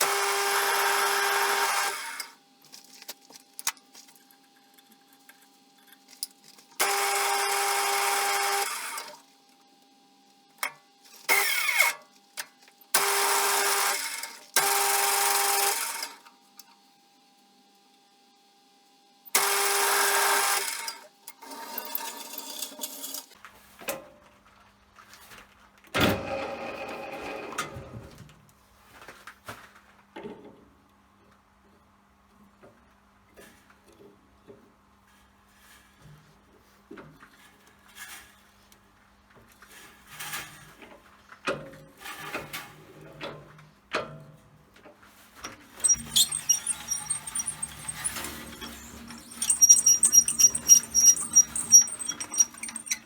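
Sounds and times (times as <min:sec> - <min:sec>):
light metal clatter: 0:45.4 - 0:53.0
electric motor tool whining: 0:45.8 - 0:53.0.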